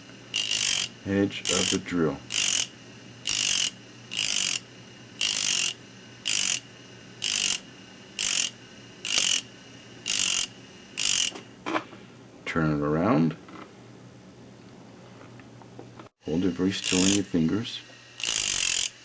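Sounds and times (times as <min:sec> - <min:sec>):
faint motor hum: 0:00.0 - 0:19.0
drill grinding on disc: 0:00.3 - 0:11.4, 0:16.3 - 0:19.0.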